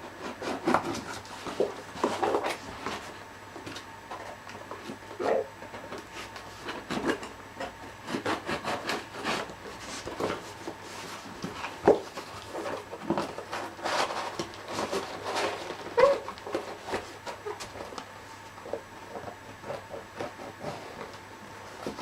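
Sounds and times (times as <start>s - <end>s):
knife cutting cardboard box: 0.2s - 3.1s, 8.0s - 18.0s
cardboard rustling: 0.2s - 7.2s, 8.0s - 22.0s.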